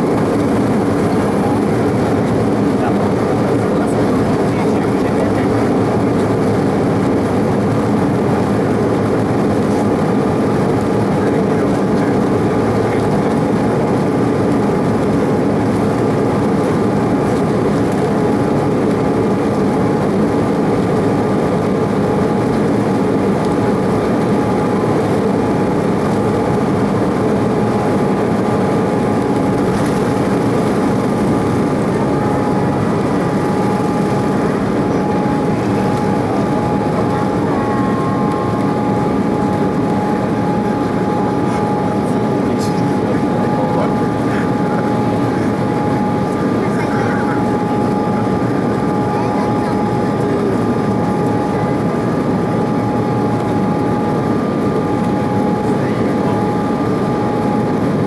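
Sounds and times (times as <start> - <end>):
steady whining tones: 0.0 - 58.0.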